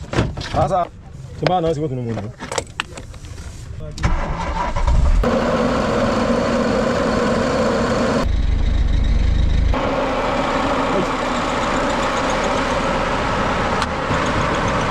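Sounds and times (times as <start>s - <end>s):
car engine idling: 4.7s - 14.9s.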